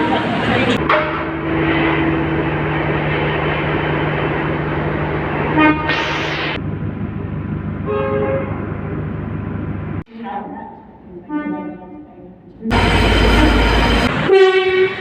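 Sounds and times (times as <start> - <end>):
train rumbling past: 0.0 - 10.0, 12.4 - 15.0
train horn toots: 0.8 - 2.2, 5.5 - 6.2, 7.8 - 8.7, 11.2 - 12.1, 12.7 - 15.0
burst of hiss: 5.8 - 6.6.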